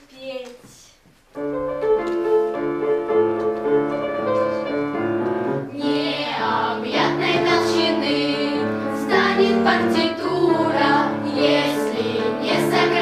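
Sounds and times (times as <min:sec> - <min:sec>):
piano music: 0:01.4 - 0:13.0.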